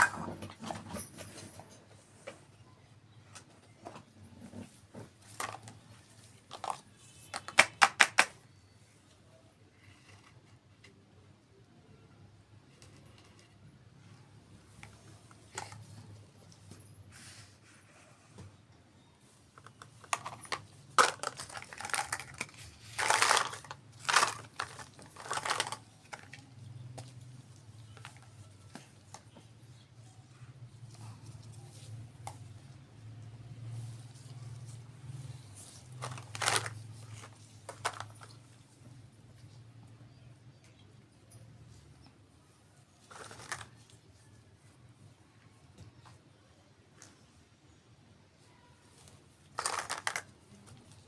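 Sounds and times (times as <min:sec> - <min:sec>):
toy pieces knocking and rustling: 0:05.2 - 0:08.4, 0:19.5 - 0:27.2, 0:35.6 - 0:38.6, 0:43.0 - 0:44.0, 0:49.5 - 0:51.0.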